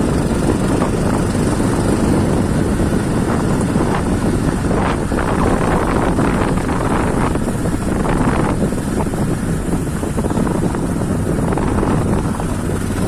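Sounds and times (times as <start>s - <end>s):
vehicle engine running: 0.0s - 13.0s
wind on microphone: 0.0s - 13.0s.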